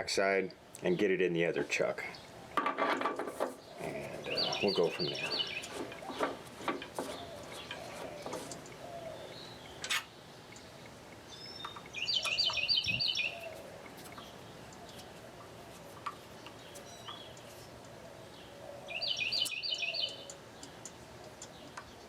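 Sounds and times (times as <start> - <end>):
bird chirping: 3.5 - 22.0.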